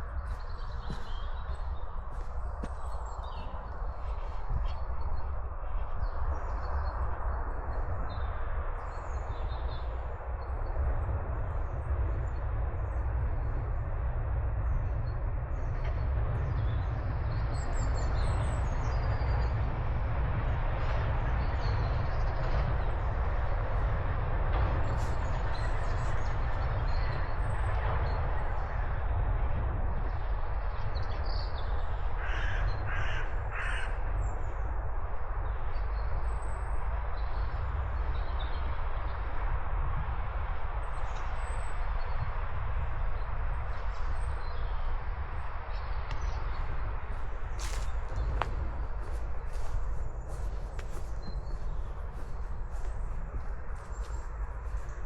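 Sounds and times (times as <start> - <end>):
small birds chirping: 0.0 - 11.5, 41.1 - 55.0
steady rumbling noise: 0.0 - 55.0.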